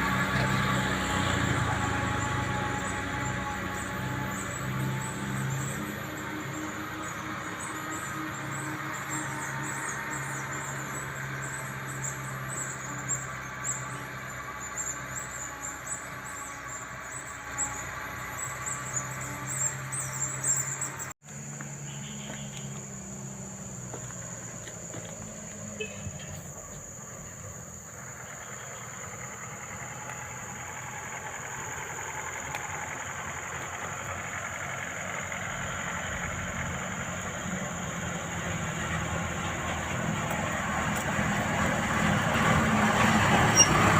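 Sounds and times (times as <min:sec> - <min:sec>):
heavy machinery engine running: 0:00.0 - 0:21.6, 0:22.2 - 0:43.9
vehicle running: 0:00.0 - 0:43.9
high jittery squealing: 0:42.0 - 0:43.9.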